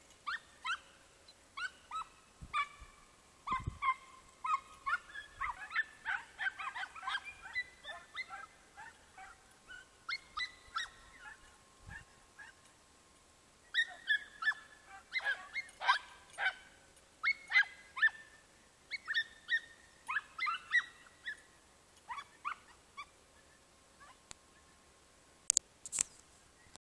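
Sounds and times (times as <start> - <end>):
dogs yelping and barking: 0.3 - 0.9, 1.6 - 12.7, 13.7 - 21.5, 22.1 - 23.4.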